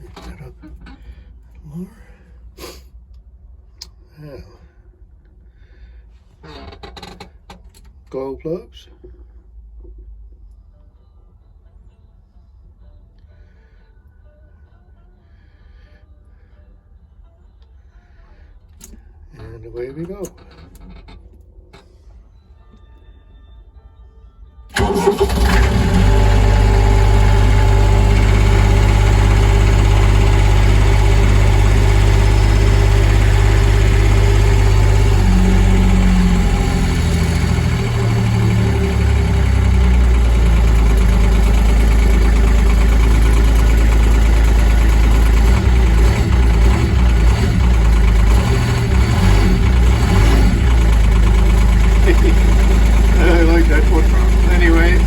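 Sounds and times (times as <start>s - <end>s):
tractor engine starting and idling: 0.0s - 1.3s, 18.8s - 22.0s, 24.7s - 55.0s.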